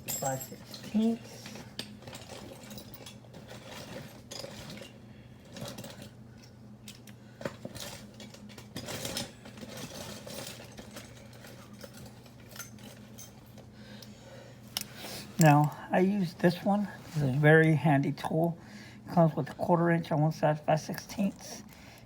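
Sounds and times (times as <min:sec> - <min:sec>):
metal hand tools clinking: 0:00.0 - 0:01.2.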